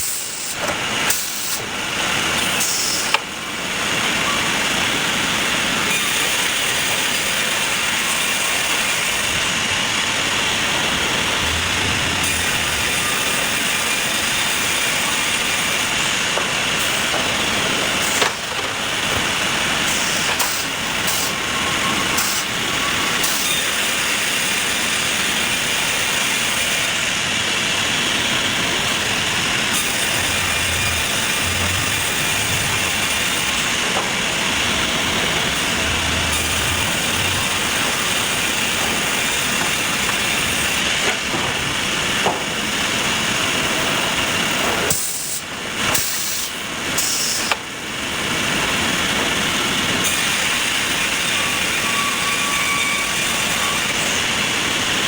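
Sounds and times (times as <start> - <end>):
sawmill machinery hissing: 0.0 - 55.0.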